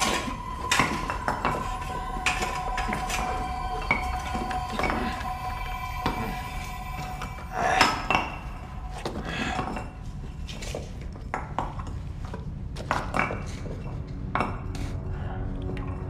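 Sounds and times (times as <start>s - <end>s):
low rumble: 0.0s - 12.7s.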